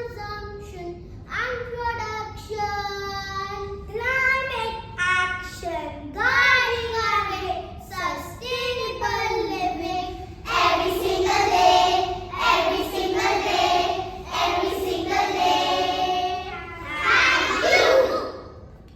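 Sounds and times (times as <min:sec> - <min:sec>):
young children singing: 0:08.3 - 0:18.6.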